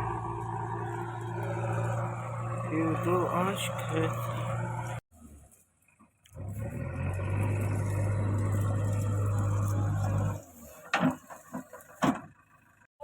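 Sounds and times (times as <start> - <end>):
machine engine running: 0.0 - 5.0, 6.5 - 10.5.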